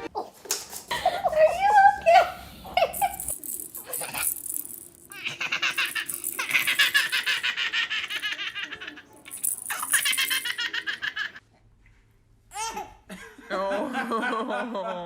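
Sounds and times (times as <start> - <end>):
baby giggling: 5.1 - 11.4.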